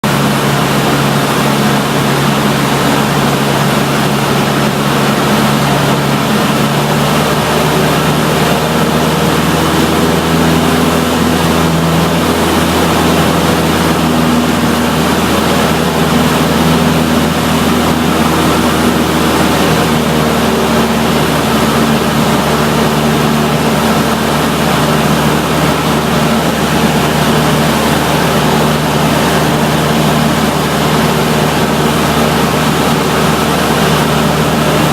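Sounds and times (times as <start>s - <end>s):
airplane engine droning: 0.0s - 34.9s
rushing air noise: 0.0s - 34.9s.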